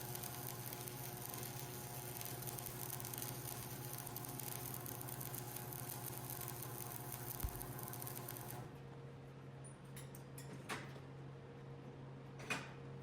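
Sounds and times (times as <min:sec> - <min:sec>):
sharp clicks: 0:00.0 - 0:08.6
welding arc crackling and hissing: 0:00.0 - 0:08.6
electrical hum: 0:00.0 - 0:08.7.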